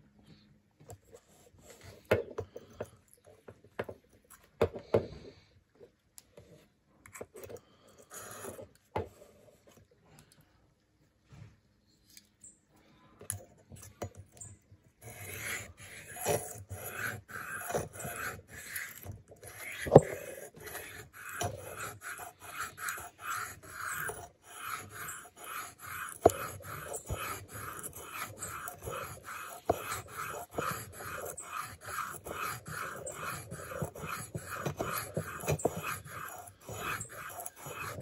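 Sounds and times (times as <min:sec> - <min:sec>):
knife scraping on sharpening stone: 0:13.8 - 0:38.0.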